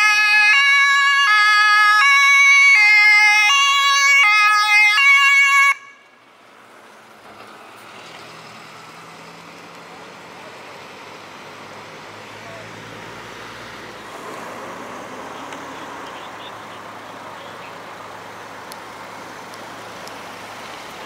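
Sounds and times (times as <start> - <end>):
two-tone siren: 0.0 - 6.1
engine and road noise: 0.0 - 21.0.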